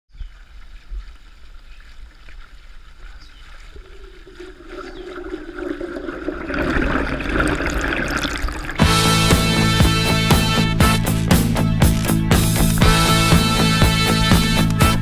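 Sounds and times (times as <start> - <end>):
water splashing and trickling: 0.4 - 9.3.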